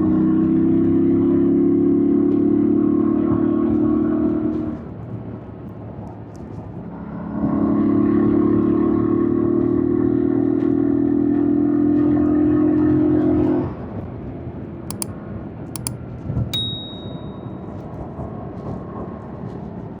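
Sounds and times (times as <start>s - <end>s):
sharp clicks: 14.9s - 15.1s, 15.8s - 16.0s
short high beep: 16.6s - 17.6s.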